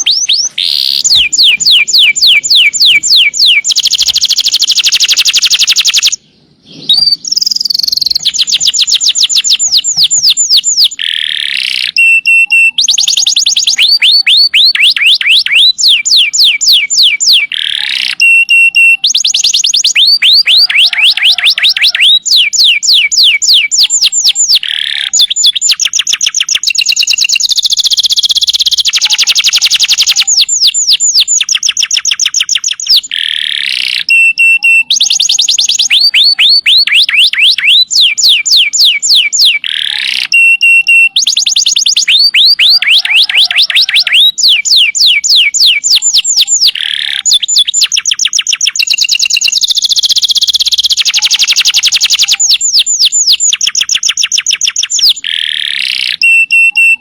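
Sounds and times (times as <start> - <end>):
canary singing trills: 0.0 - 57.0.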